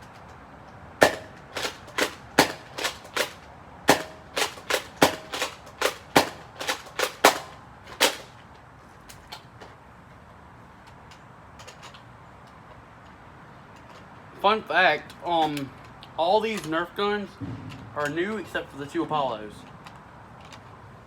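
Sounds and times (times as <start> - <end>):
toy blaster firing foam balls: 1.0 - 8.3.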